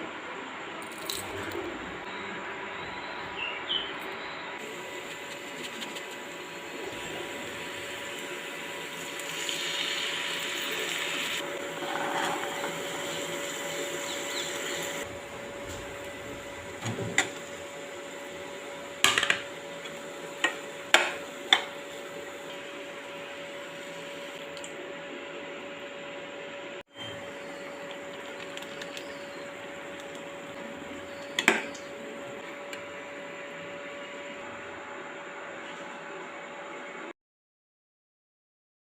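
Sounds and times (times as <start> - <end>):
cooking hiss: 4.6 - 24.8.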